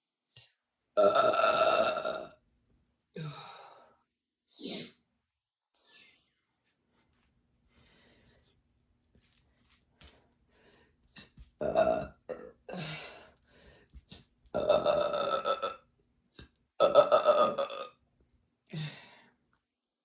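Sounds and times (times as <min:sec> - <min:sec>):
woman belching: 0:01.0 - 0:02.4, 0:11.6 - 0:13.0, 0:14.5 - 0:15.8, 0:16.8 - 0:18.0.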